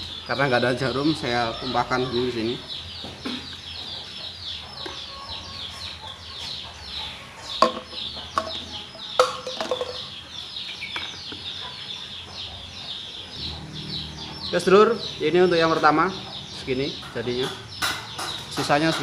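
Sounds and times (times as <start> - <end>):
chickens clucking: 0.0 - 19.0
sharp knocks: 15.0 - 19.0.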